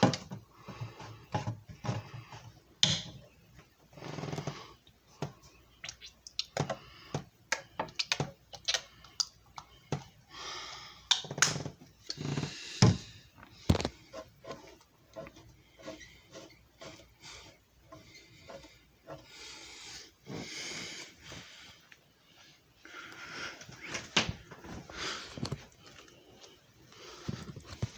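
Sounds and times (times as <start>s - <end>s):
rubbing or rustling: 13.4s - 19.6s.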